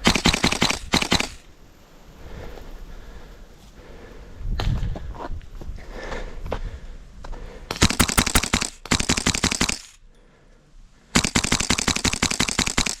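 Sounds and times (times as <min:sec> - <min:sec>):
airsoft gun full auto bursts: 0:07.9 - 0:09.8.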